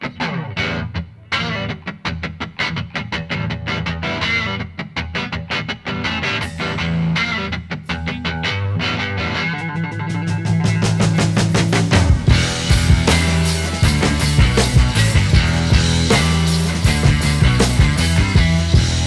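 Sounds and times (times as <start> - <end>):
distorted plucked guitar run: 0.0 - 19.0.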